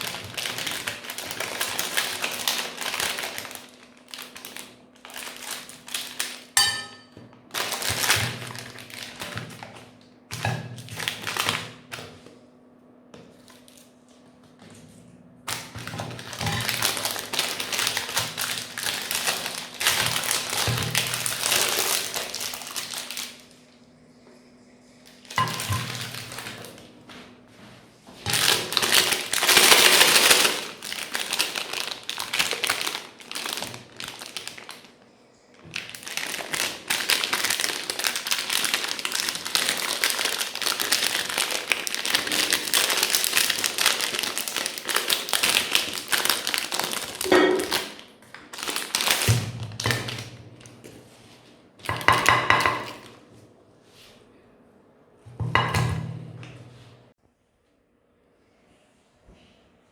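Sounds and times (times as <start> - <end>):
meat grinder crunching ice cream: 0.0 - 6.6, 7.4 - 11.9, 15.5 - 23.4, 28.3 - 34.7, 35.6 - 50.2.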